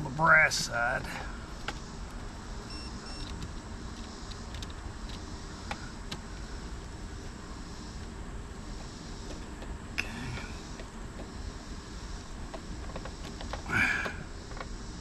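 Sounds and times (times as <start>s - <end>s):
low background noise: 0.0s - 15.0s
faint high beeps: 2.6s - 3.4s.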